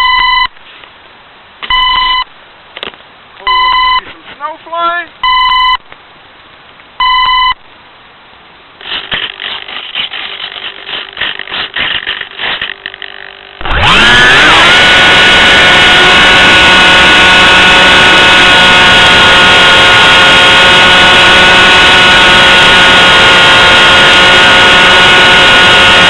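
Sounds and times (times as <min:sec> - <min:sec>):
short electronic beeps: 0:00.0 - 0:00.6, 0:01.6 - 0:02.3, 0:03.4 - 0:04.1, 0:05.2 - 0:05.9, 0:07.0 - 0:07.6
crackling noise: 0:08.5 - 0:14.0
electric motor and propeller whine: 0:08.8 - 0:26.0.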